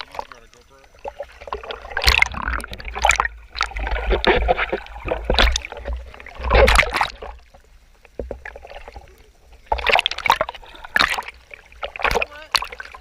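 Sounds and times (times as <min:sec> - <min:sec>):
water splashing around boat: 0:00.0 - 0:13.0.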